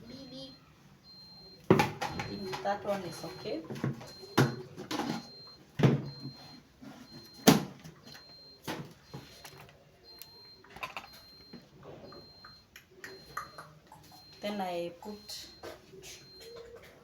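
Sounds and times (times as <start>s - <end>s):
knocks and clunks at washing machine: 3.6s - 6.4s.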